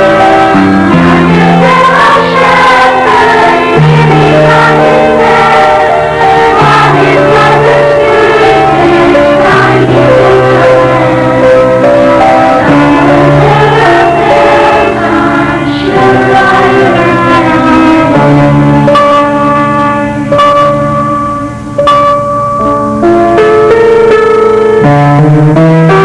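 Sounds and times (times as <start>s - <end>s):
choir singing in harmony: 0.0s - 20.8s.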